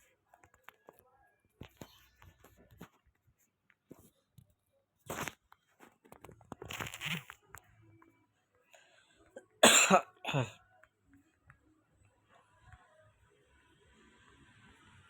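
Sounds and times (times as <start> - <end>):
person coughing: 9.4 - 10.6.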